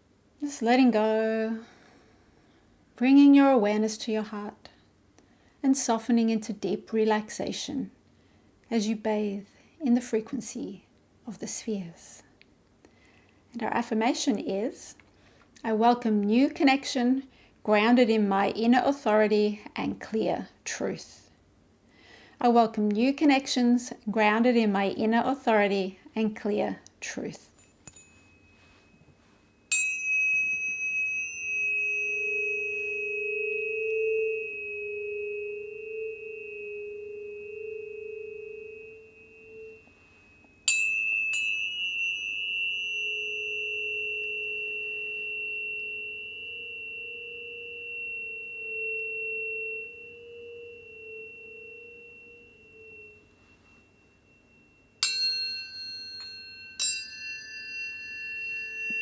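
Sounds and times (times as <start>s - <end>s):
tuning forks ringing: 27.6s - 59.0s
cluster of higher tones: 31.7s - 42.7s, 43.8s - 56.8s.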